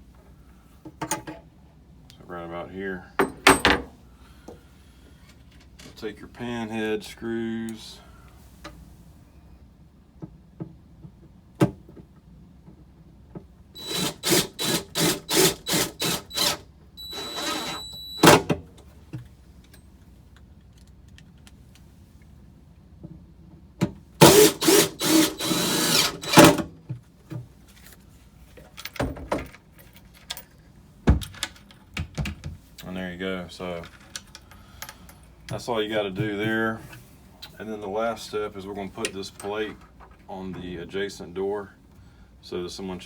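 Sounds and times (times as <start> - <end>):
power drill driving screws: 13.8 - 18.5, 24.2 - 26.7.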